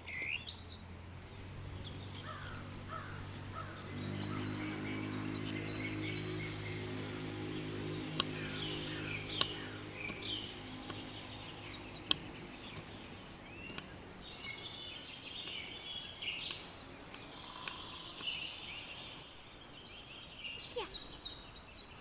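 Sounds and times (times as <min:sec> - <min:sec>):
low steady hum: 0:00.0 - 0:19.9
small birds chirping: 0:00.0 - 0:22.0
sharp clicks: 0:02.0 - 0:18.6.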